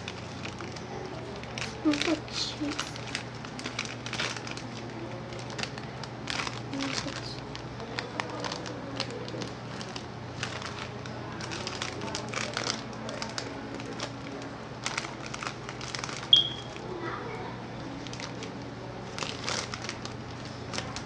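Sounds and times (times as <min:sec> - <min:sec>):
plastic snack packet crinkling: 0:00.0 - 0:17.0, 0:17.8 - 0:21.0.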